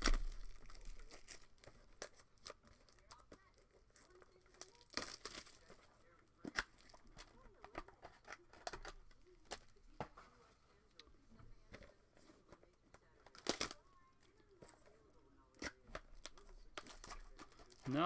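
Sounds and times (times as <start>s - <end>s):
wrapper crinkling and tearing: 0.0s - 9.8s, 13.0s - 14.0s, 15.6s - 18.0s.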